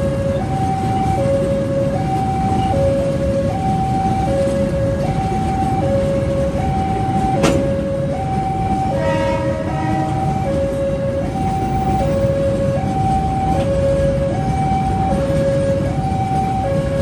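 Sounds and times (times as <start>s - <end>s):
level crossing two-tone alarm: 0.0s - 17.0s
horn-like tone: 8.9s - 10.4s.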